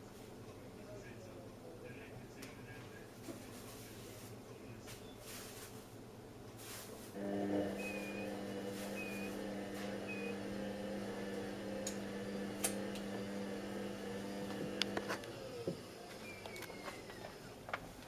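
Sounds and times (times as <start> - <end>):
washing machine humming: 5.9 - 18.0.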